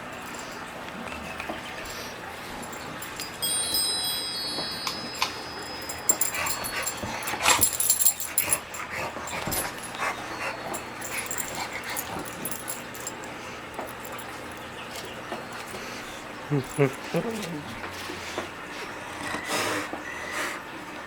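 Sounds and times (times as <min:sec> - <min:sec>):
high thin ringing tone: 0:02.7 - 0:08.2.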